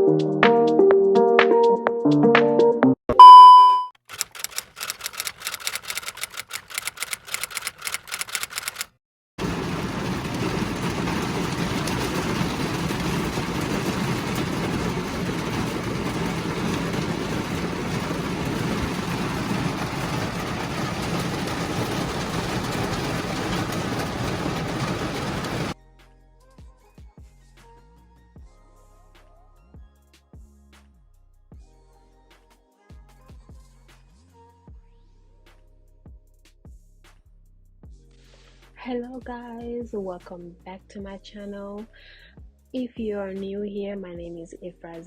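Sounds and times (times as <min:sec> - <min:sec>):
rapid typewriter-like clicking: 0:04.0 - 0:25.8
rushing noise with low hum: 0:09.4 - 0:25.8.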